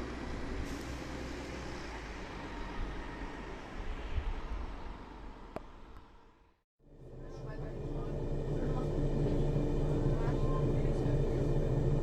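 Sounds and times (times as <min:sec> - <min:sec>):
diesel bus rumbling: 0:00.0 - 0:06.3, 0:06.9 - 0:12.0.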